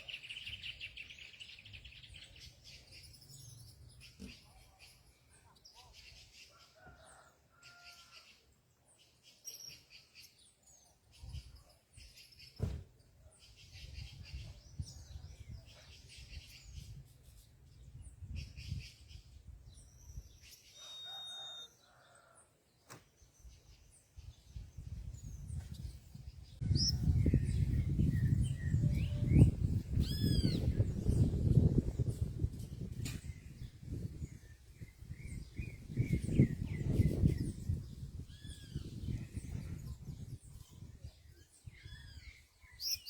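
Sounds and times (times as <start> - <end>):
birds chirping and whistling: 0.0 - 5.2, 13.4 - 21.8, 24.5 - 43.0.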